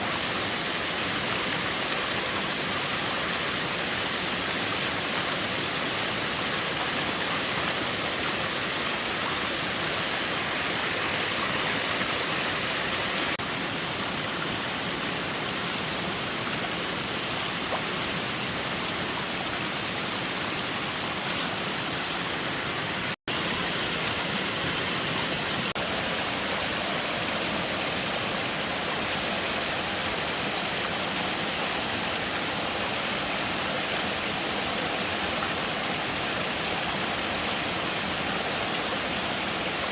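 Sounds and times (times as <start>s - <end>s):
water rushing: 0.0s - 39.9s.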